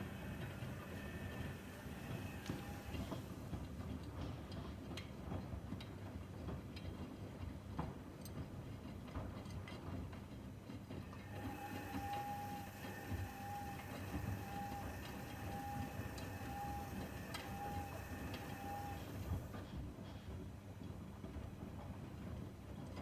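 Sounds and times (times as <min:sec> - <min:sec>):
low machine hum: 0:00.0 - 0:03.5, 0:11.1 - 0:19.6
washing machine beeping: 0:00.0 - 0:03.6, 0:11.1 - 0:19.6.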